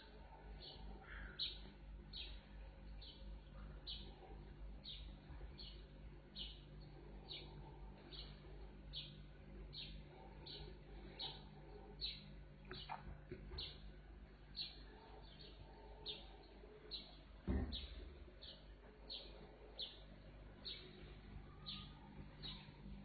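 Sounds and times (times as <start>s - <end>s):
small bird chirping: 0.5s - 13.9s, 14.5s - 22.9s
dull thump: 17.4s - 18.1s.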